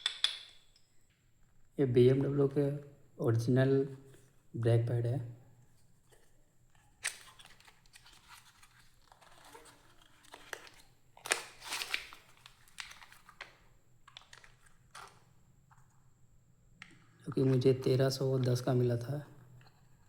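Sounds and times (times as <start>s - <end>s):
packaging crinkling and rustling: 6.2s - 15.4s.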